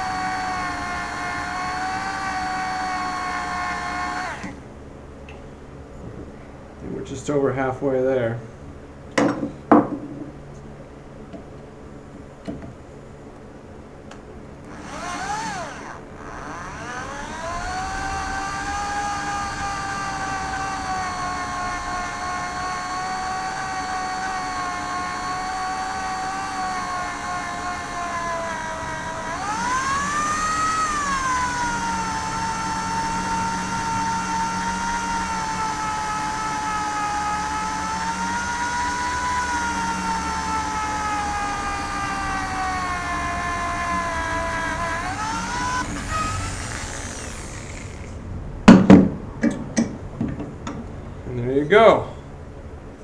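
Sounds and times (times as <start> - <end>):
electric drill whining: 0.0 - 4.7, 14.6 - 48.2.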